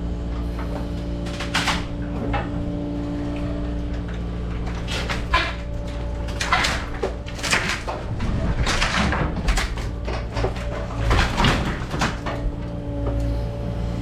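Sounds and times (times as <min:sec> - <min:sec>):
diesel engine running: 0:00.0 - 0:14.0
debris crashing and crunching: 0:03.3 - 0:13.2.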